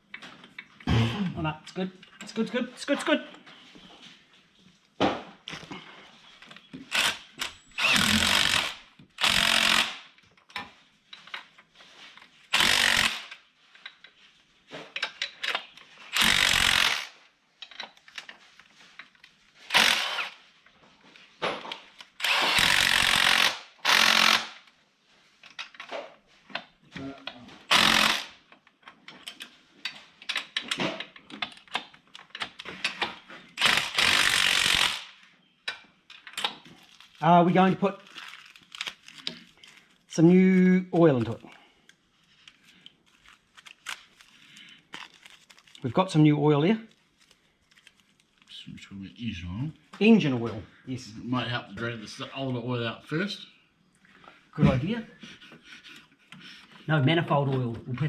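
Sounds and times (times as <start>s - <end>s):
clatter of parts: 10.1s - 20.3s, 25.4s - 37.2s
power tool running in bursts: 27.7s - 28.3s.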